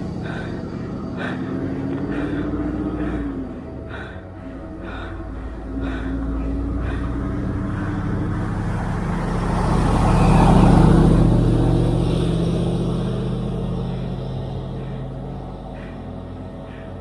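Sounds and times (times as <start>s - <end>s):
vehicle engine passing by: 0.0s - 17.0s.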